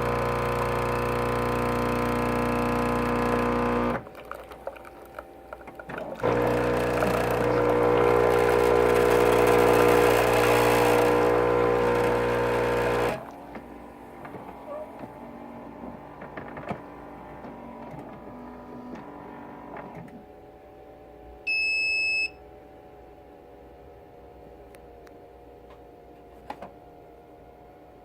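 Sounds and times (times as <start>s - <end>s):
espresso machine pump buzzing: 0.0s - 4.3s, 5.7s - 14.2s.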